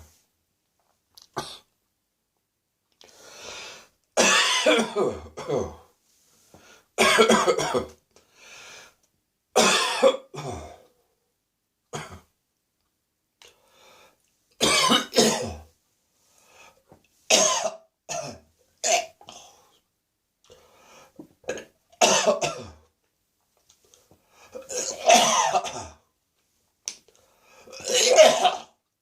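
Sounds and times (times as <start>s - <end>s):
person coughing: 4.2s - 5.9s, 7.0s - 8.0s, 9.6s - 10.8s, 14.6s - 15.7s, 17.3s - 19.5s, 21.5s - 22.8s, 24.6s - 26.0s, 27.7s - 28.8s.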